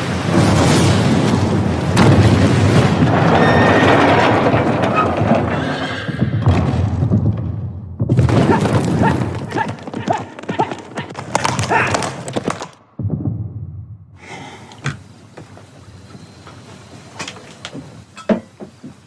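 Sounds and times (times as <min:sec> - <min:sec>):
horses whinnying: 0:03.4 - 0:06.6, 0:08.3 - 0:12.8
horse hoofbeats galloping: 0:08.0 - 0:12.8.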